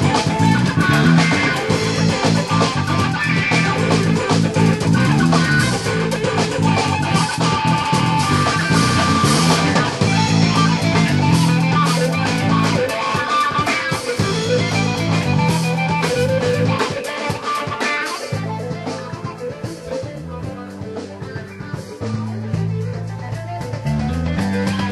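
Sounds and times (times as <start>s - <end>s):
rock band playing: 0.0s - 24.9s.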